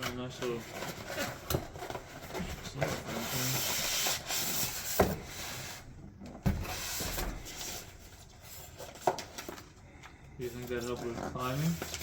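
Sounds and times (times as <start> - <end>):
packaging rustling: 7.4 - 12.0.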